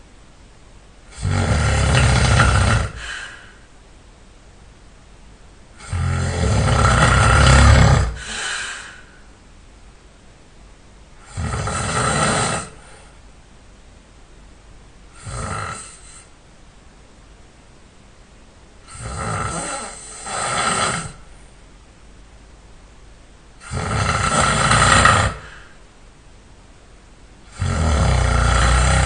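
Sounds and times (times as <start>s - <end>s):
person snoring loudly: 1.1s - 3.5s, 5.8s - 9.0s, 11.2s - 13.0s, 15.2s - 16.3s, 18.9s - 21.3s, 23.6s - 25.8s, 27.5s - 29.0s.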